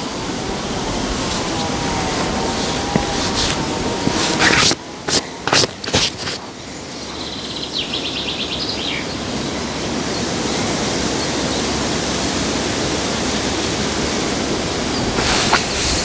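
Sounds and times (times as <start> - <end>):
rushing outdoor noise: 0.0 - 6.7.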